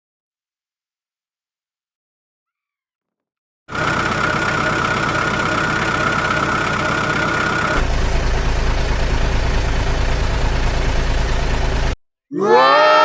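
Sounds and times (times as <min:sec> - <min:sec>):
high steady whine: 0:03.7 - 0:12.0
vehicle engine running: 0:03.7 - 0:12.0.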